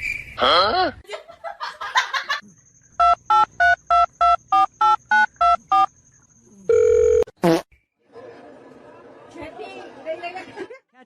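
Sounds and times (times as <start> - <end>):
long low phone tone: 6.7 - 7.4.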